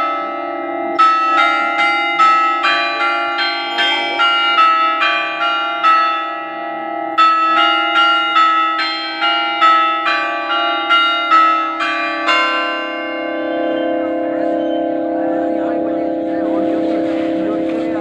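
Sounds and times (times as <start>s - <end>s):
church bells ringing: 0.0s - 18.0s
steady low hum: 14.1s - 18.0s.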